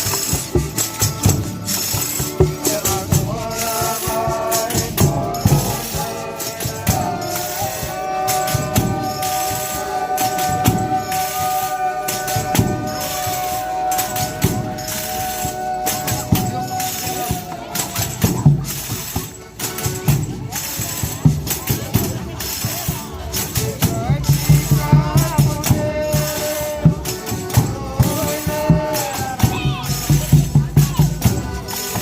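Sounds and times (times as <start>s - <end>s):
tambourines jingling and beating: 0.0s - 32.0s
held long note: 5.2s - 18.2s.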